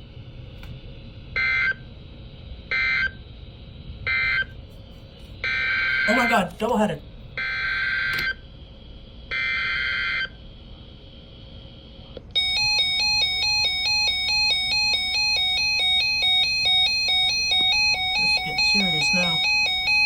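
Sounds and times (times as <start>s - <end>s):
electronic alert chime melody: 15.2s - 20.0s.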